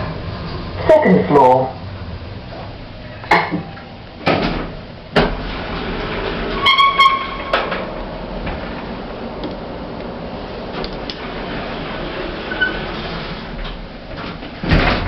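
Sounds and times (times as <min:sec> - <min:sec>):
lift clunks and knocks: 0:03.3 - 0:08.8, 0:13.6 - 0:15.0.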